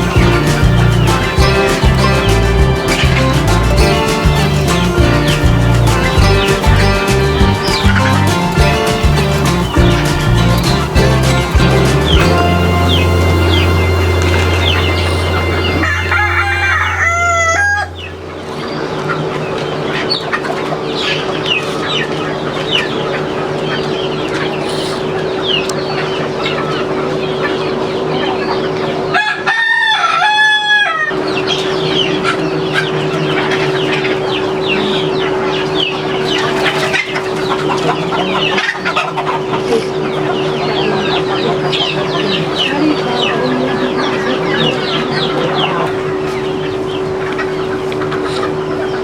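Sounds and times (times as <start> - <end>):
chickens clucking: 0.0 - 49.0
steady mechanical hum: 0.0 - 49.0
rooster crowing: 12.6 - 18.3, 29.1 - 31.2.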